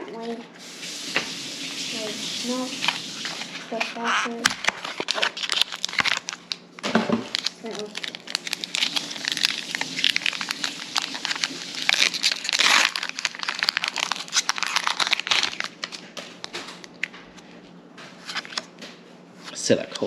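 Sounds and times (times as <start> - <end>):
foil wrapper crinkling and tearing: 1.9 - 17.1, 18.2 - 18.7.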